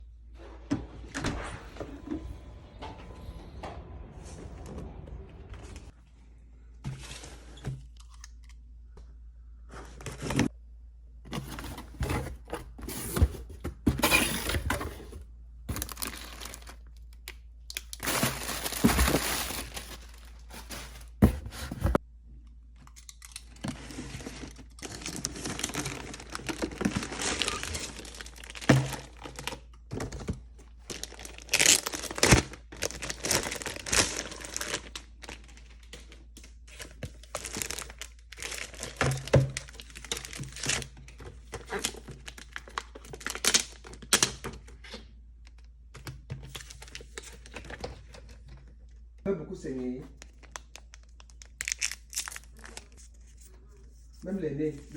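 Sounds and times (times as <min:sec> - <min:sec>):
packaging crinkling and rustling: 0:11.3 - 0:22.0, 0:23.0 - 0:45.7, 0:46.4 - 0:48.9, 0:50.2 - 0:53.6
packaging tearing: 0:15.7 - 0:16.8, 0:17.9 - 0:22.0, 0:30.9 - 0:35.7, 0:36.8 - 0:39.0, 0:50.2 - 0:53.0
box knocks: 0:20.6 - 0:22.0.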